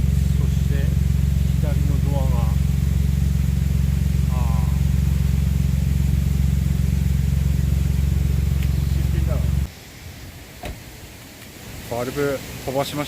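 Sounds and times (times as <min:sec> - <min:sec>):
person speaking: 0:00.0 - 0:02.9, 0:04.2 - 0:05.2, 0:08.6 - 0:09.7
small engine running: 0:00.0 - 0:09.7.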